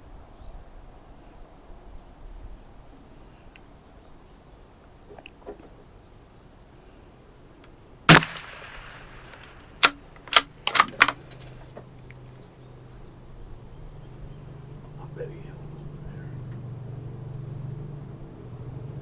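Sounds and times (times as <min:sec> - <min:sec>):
rifle shot: 0:08.1 - 0:11.4
rifle bolt clicks: 0:08.1 - 0:11.8.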